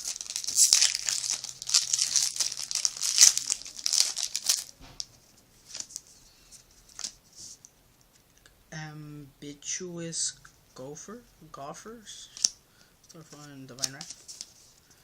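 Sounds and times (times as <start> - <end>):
foil wrapper crinkling and tearing: 0.0 - 4.7.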